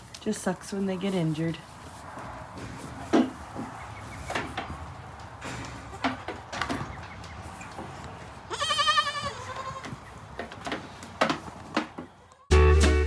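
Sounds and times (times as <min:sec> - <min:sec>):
knocks and rustles: 0:01.8 - 0:08.4, 0:09.2 - 0:12.2
goat bleating: 0:08.5 - 0:10.2.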